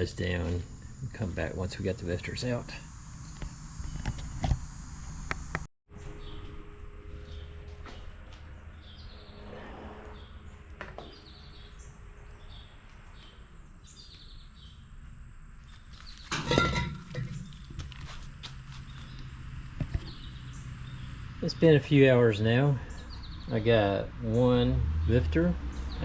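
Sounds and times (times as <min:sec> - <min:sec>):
small birds chirping: 0:11.0 - 0:15.0, 0:15.6 - 0:16.4, 0:17.2 - 0:24.7.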